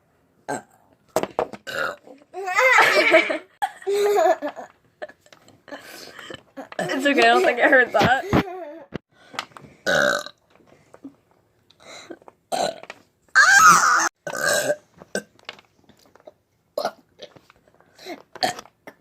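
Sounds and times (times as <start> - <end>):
person burping: 0.5 - 0.8, 1.7 - 2.0, 9.8 - 10.4, 12.1 - 12.9, 14.2 - 15.3, 16.8 - 17.3, 18.4 - 19.0.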